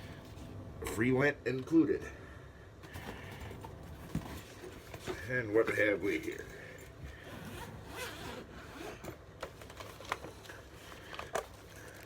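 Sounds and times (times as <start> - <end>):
zipper and fabric rustling: 7.2 - 9.2.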